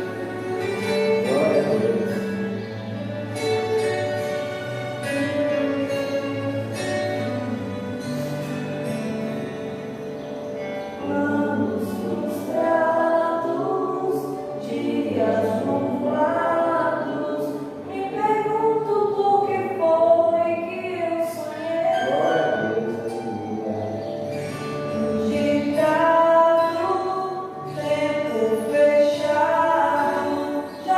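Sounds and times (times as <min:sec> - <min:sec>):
group singing a hymn: 0:11.0 - 0:20.7.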